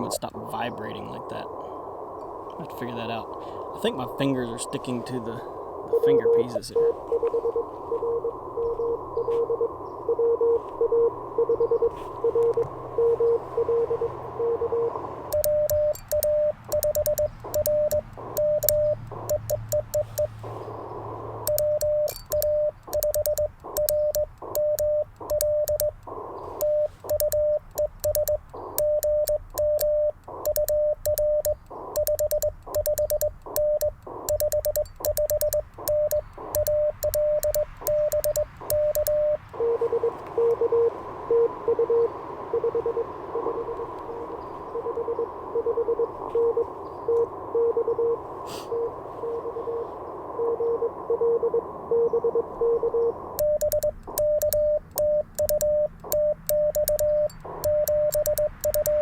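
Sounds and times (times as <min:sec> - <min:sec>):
radio band hiss: 0:00.0 - 0:11.0, 0:11.7 - 0:22.1, 0:22.7 - 0:34.4, 0:35.6 - 0:55.0, 0:57.0 - 0:59.0
morse code beeps: 0:02.2 - 0:59.0
morse sidetone beeps: 0:03.8 - 0:59.0
morse key contacts clicking: 0:12.4 - 0:20.5, 0:21.4 - 0:40.6, 0:53.2 - 0:59.0.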